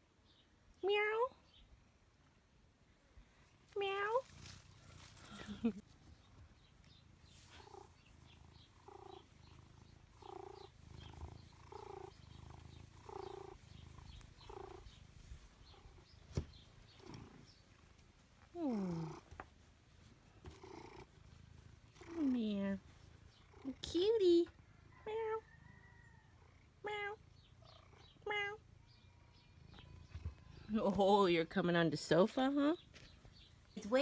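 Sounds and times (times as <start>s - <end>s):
cat purring: 3.4s - 32.2s
cat meowing: 28.2s - 28.6s.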